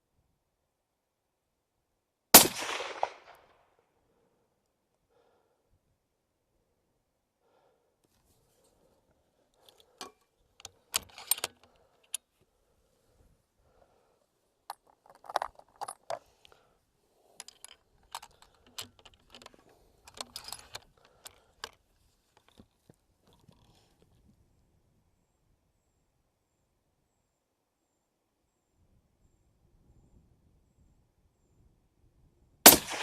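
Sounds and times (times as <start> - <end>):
metallic clicks of rifle gear: 9.5 - 12.4, 14.7 - 16.6, 17.3 - 24.2.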